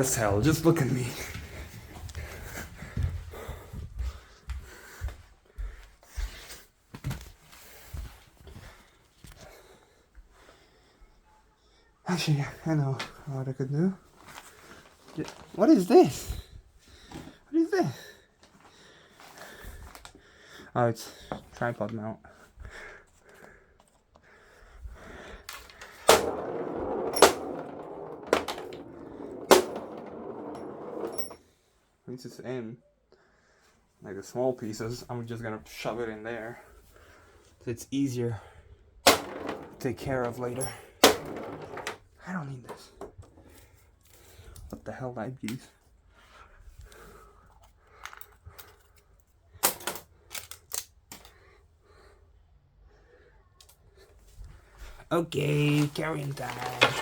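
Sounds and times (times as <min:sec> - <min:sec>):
person breathing heavily: 0:01.2 - 0:06.5, 0:16.3 - 0:21.5, 0:22.3 - 0:26.1
clattering and rustling: 0:25.5 - 0:31.4, 0:39.1 - 0:42.1, 0:55.7 - 0:57.0.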